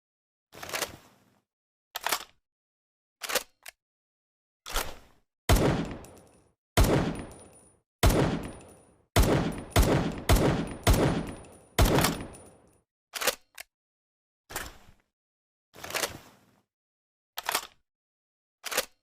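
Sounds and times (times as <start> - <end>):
pistol shots: 5.5 - 6.2, 6.8 - 7.4, 8.0 - 12.5.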